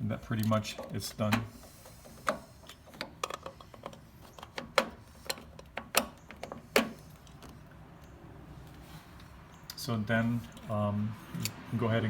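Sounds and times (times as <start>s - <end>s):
clicks and knocks of tools: 0.4s - 8.2s.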